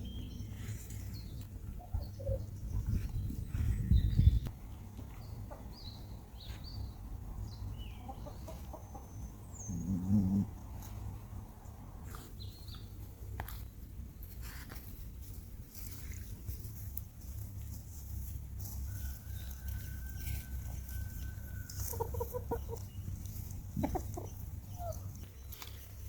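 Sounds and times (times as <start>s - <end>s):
low animal call: 9.6s - 10.6s.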